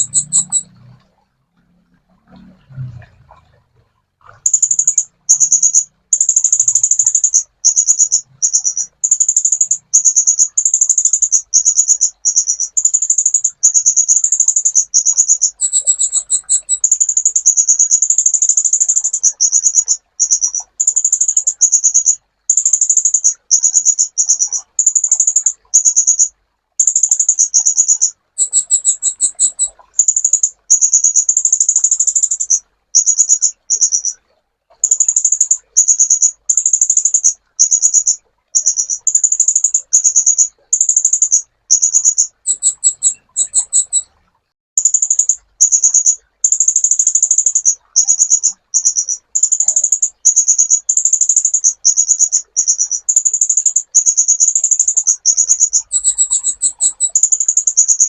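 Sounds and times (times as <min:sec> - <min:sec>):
bird high-pitched trilling chatter: 0:00.0 - 0:00.8, 0:04.3 - 0:34.2, 0:34.8 - 0:44.1, 0:44.8 - 0:58.0.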